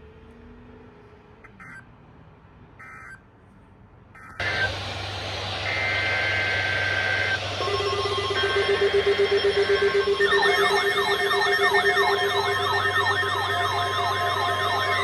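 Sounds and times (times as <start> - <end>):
digital data bursts: 4.4 - 15.0
fast pulsing low tone: 4.4 - 15.0
steady high two-note tone: 4.4 - 15.0.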